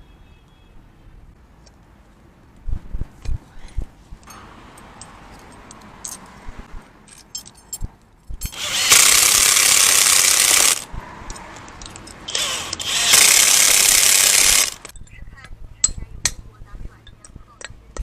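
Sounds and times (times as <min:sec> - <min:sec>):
power tool hissing rush: 0:08.6 - 0:10.9, 0:12.3 - 0:14.9.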